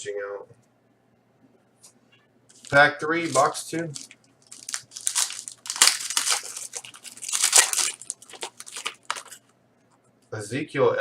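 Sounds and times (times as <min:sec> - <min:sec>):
wrapper tearing and crinkling: 0:02.5 - 0:09.4.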